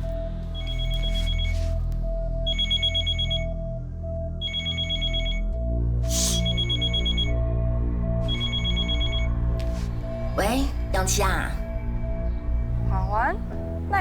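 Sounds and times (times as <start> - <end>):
low background music: 0.0 - 14.0
telephone ringing: 2.5 - 3.5, 4.4 - 5.5.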